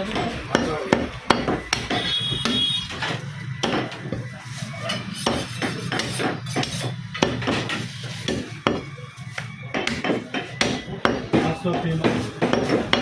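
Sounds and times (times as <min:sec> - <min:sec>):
knife striking wooden block: 0:00.1 - 0:02.7, 0:03.6 - 0:04.0, 0:05.2 - 0:08.9.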